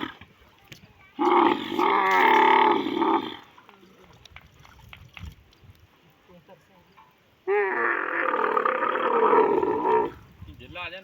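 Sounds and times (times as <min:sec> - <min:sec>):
camel calling: 0:01.2 - 0:03.5, 0:07.4 - 0:10.3.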